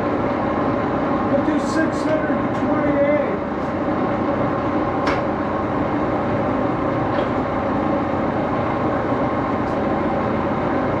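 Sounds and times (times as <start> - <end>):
metal lathe humming: 0.0 - 11.0.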